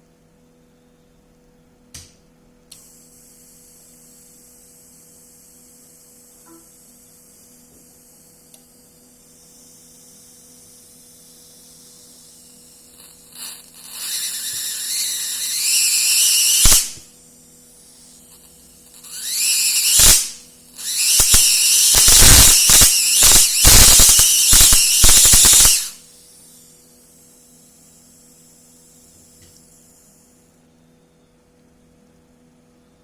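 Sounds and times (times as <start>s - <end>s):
electric arc hissing and buzzing: 2.8s - 26.7s
sharp electric snap: 12.3s - 17.1s, 18.2s - 26.1s
arc sizzling with cracks: 12.9s - 17.1s, 18.3s - 26.0s
rising whine: 13.9s - 17.0s, 19.1s - 26.0s.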